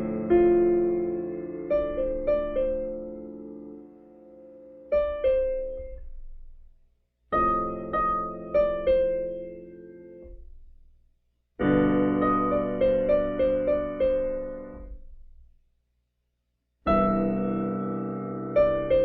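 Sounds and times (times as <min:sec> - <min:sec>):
piano played slowly: 0:00.0 - 0:06.6, 0:07.3 - 0:10.8, 0:11.6 - 0:15.4, 0:16.9 - 0:19.0.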